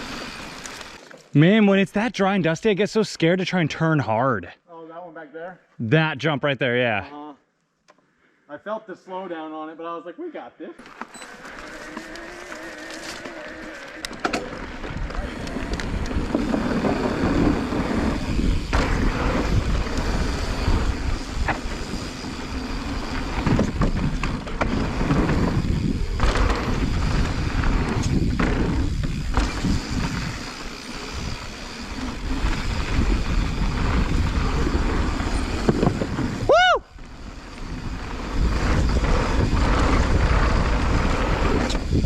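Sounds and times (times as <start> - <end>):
bike rattling over bumps: 10.8 - 42.0
tyres rolling on dirt: 10.8 - 42.0
wind rushing over microphone: 14.8 - 42.0.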